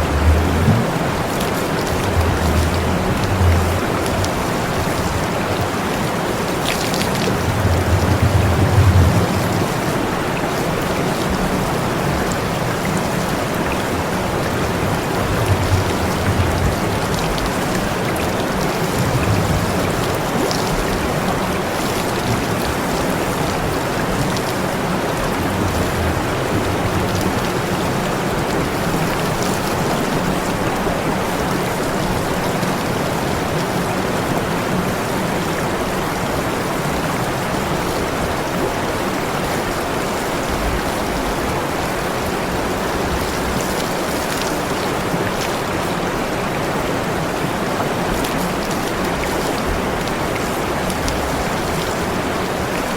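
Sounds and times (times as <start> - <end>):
low rumbles: 0.0 - 21.7, 22.3 - 29.2.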